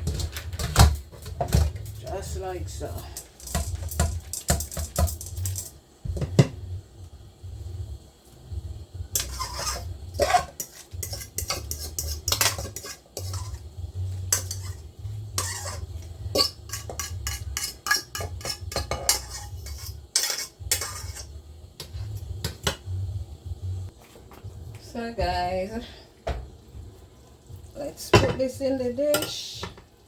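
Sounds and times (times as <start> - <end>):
spoon scraping and clinking pot: 9.1 - 22.0.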